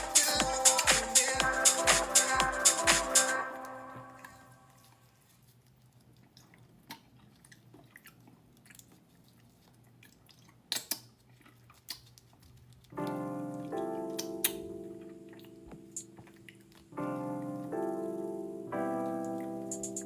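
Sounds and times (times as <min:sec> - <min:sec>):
person chewing: 0:04.8 - 0:13.0.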